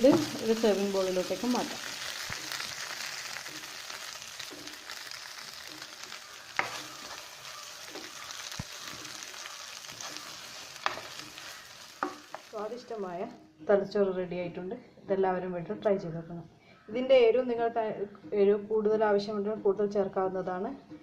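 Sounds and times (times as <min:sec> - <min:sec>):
meat sizzling in a pan: 0:00.0 - 0:13.0.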